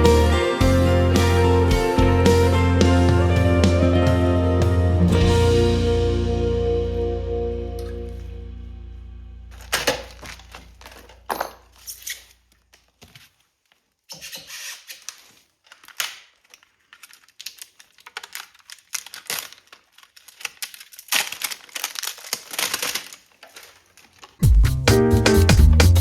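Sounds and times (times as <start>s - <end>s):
packaging rustling: 9.5s - 24.4s
clicks and taps of bike parts: 9.6s - 13.2s.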